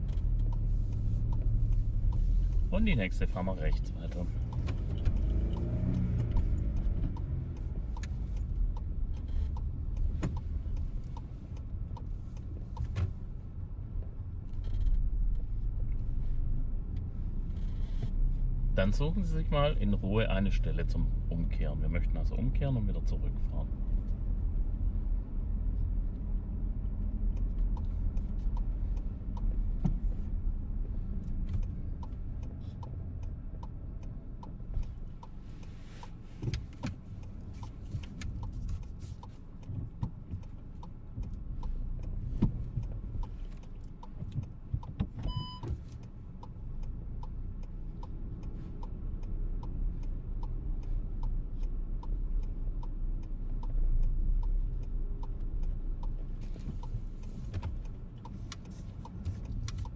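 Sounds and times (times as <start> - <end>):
engine and road rumble: 0.0 - 59.9
turn signal ticking: 0.0 - 59.9
short beep: 45.3 - 45.7.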